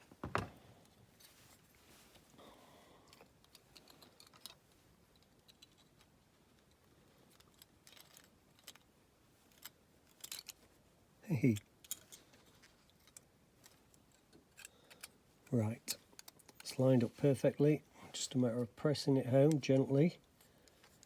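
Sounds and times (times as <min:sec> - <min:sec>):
soft rubbing of plastic: 0:00.0 - 0:02.4.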